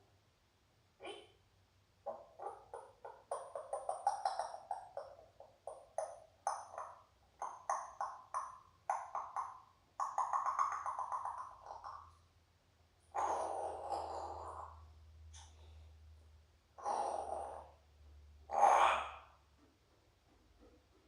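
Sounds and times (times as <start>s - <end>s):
parrot clicking and popping: 2.1s - 12.2s
parrot drawn-out call: 13.1s - 14.8s, 18.5s - 19.3s.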